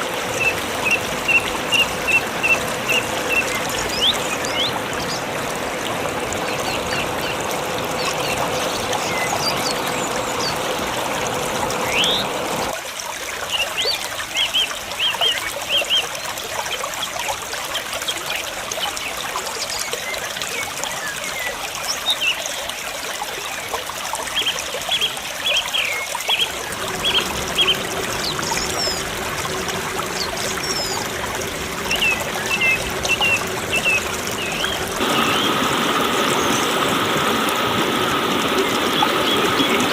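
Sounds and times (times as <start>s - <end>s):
waterfall rushing: 0.0s - 12.8s, 25.0s - 39.9s.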